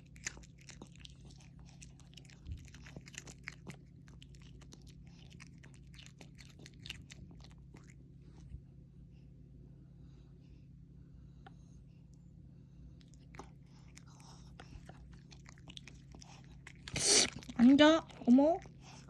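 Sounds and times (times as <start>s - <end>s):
dog crunching food: 0.0s - 8.0s, 13.0s - 19.0s
faint steady hum: 0.0s - 19.0s.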